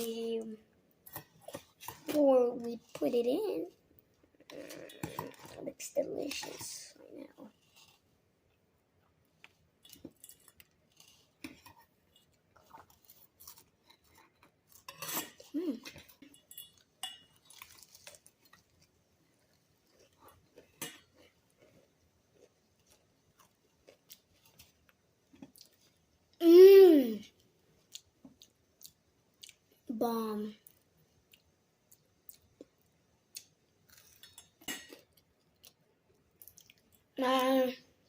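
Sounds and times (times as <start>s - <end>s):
utensil clinking on dish: 16.2s - 17.4s.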